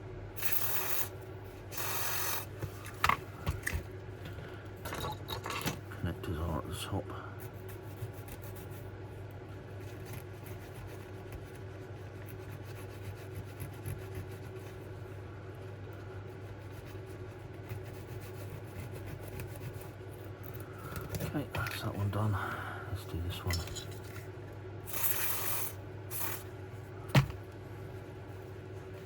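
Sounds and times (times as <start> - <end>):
low electrical hum: 0.0 - 29.0
rubbing and scratching by hand: 7.4 - 20.6.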